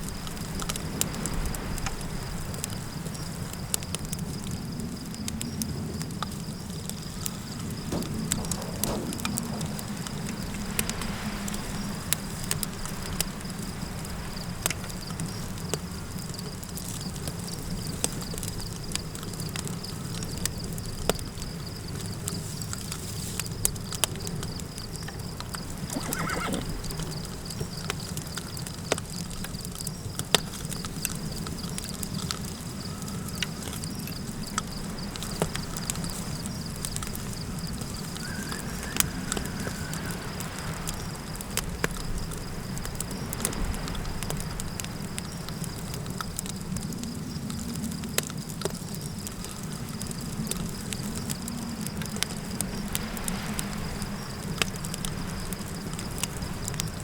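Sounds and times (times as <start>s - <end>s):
campfire crackling: 0.0s - 57.0s
insects chirring: 0.0s - 57.0s
low wind: 0.0s - 57.0s
horse whinnying: 25.8s - 27.0s.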